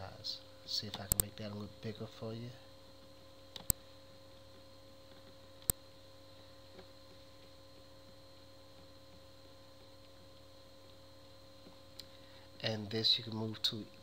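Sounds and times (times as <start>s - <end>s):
low electrical hum: 0.0s - 14.0s
sharp click: 0.9s - 1.3s, 3.5s - 3.8s.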